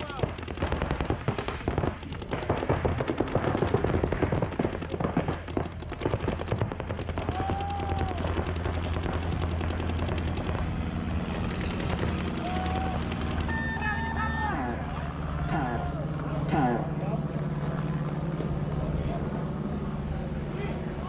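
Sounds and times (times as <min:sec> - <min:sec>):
paintball markers firing: 0:00.0 - 0:13.8
short tone: 0:13.5 - 0:14.6.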